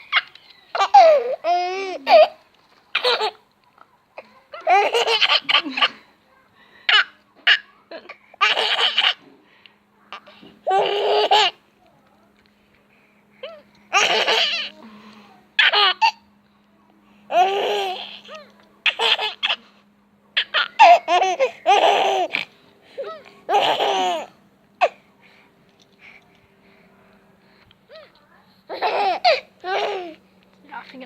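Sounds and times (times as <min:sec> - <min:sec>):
baby laughing: 0:00.0 - 0:03.4, 0:04.6 - 0:06.0, 0:06.9 - 0:09.2, 0:10.6 - 0:11.6, 0:13.5 - 0:14.8, 0:15.6 - 0:16.2, 0:17.3 - 0:19.6, 0:20.4 - 0:25.0, 0:28.7 - 0:30.2.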